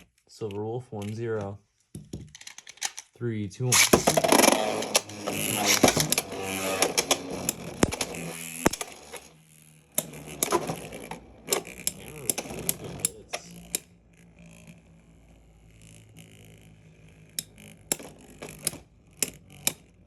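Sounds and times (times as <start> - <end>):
faint spinning tops whirring: 3.7 - 20.0.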